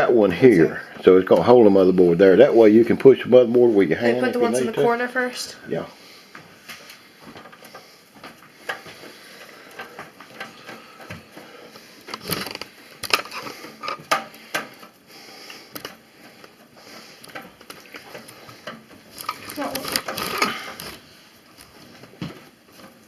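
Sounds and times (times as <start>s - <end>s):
screws clicking and scraping metal: 19.1s - 21.0s.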